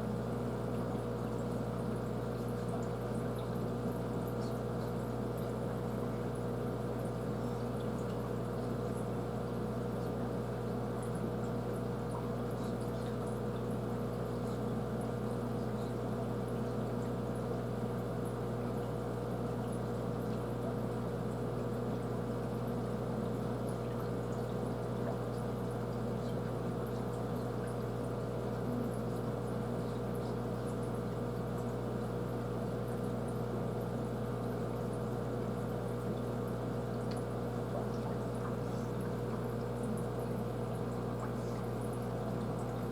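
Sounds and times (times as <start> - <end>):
aquarium filter hum: 0.0 - 42.9
water trickling and splashing: 35.4 - 42.9.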